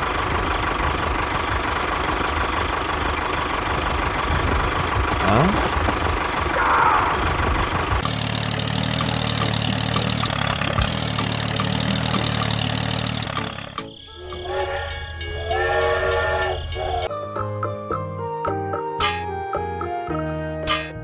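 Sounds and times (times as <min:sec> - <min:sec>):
train rumbling with clicks: 0:00.0 - 0:18.1
jingly music: 0:11.6 - 0:21.0
train whistle blowing: 0:14.1 - 0:17.1.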